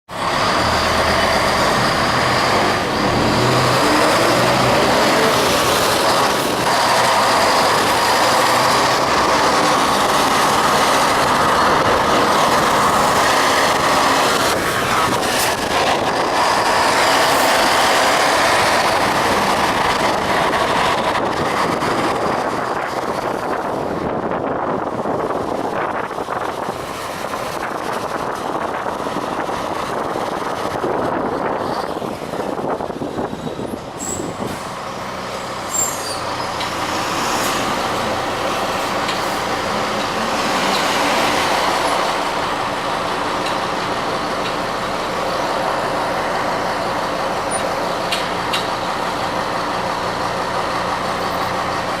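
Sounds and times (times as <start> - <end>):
bus engine growling: 0.1 - 52.0
rushing noise: 0.1 - 52.0.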